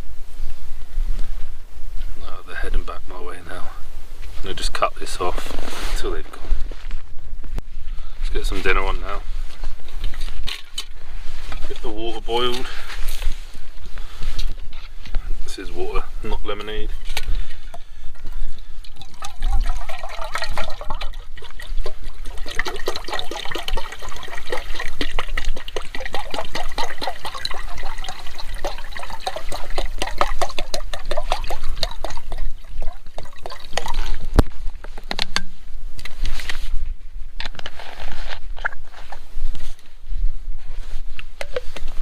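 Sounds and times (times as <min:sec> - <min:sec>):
water glugging into a pot: 0:17.0 - 0:34.6.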